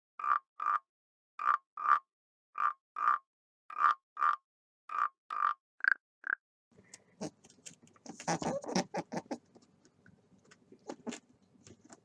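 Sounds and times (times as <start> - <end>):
animal croaking calls: 8.1 - 9.6.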